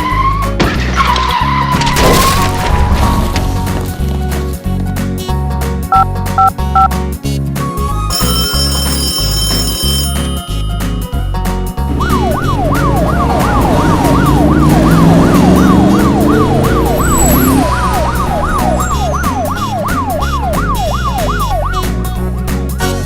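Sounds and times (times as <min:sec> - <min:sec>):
engine-like sound revving: 0:11.8 - 0:20.6
fast wailing siren: 0:11.9 - 0:21.9.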